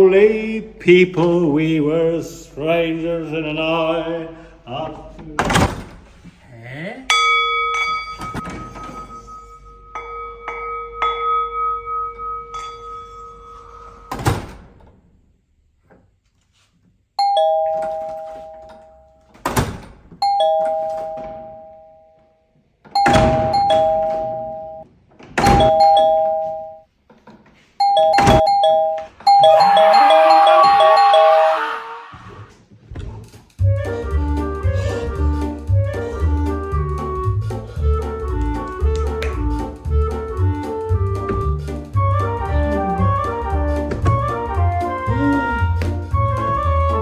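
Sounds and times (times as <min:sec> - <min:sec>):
held steady tone: 0:07.1 - 0:14.1
two-tone doorbell chime: 0:07.1 - 0:14.2, 0:17.2 - 0:19.3, 0:20.2 - 0:22.4, 0:23.0 - 0:24.8, 0:25.5 - 0:26.8, 0:27.8 - 0:31.5
loud thumps: 0:34.7 - 0:47.0.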